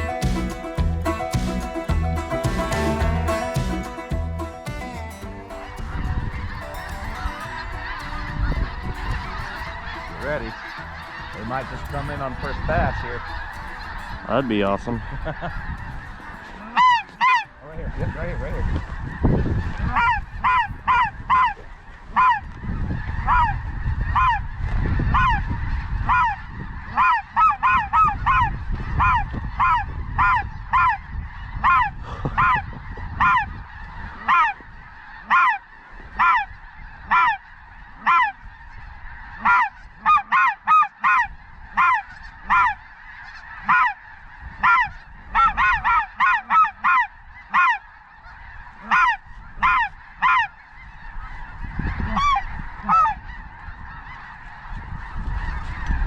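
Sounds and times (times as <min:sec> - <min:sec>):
geese honking: 0:00.0 - 0:56.0
wind on microphone: 0:05.1 - 0:16.9, 0:17.7 - 0:35.2, 0:41.2 - 0:47.5, 0:48.2 - 0:56.0.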